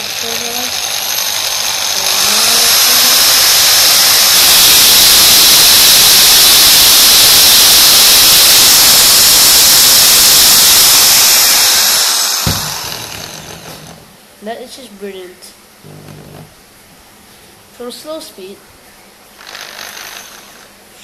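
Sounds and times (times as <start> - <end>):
hammer drill motor whine: 0.0 - 14.0, 19.4 - 20.7
cooling fan air rush: 0.0 - 14.4.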